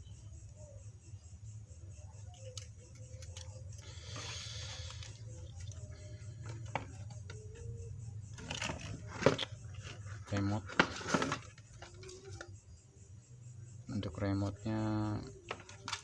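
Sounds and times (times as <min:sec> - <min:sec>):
handling rustle: 0:08.3 - 0:12.6.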